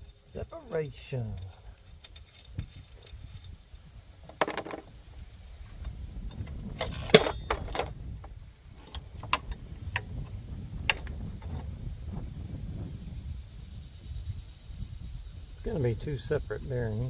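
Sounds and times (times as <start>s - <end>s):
metal tools clinking: 0.0s - 3.6s, 4.3s - 4.8s, 6.8s - 8.0s
loud ringing metallic clink: 6.8s - 8.0s.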